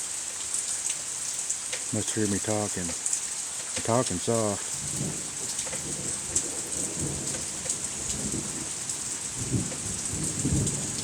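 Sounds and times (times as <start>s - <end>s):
steady rain: 0.0s - 11.0s
low thunder rumbling: 4.8s - 11.0s.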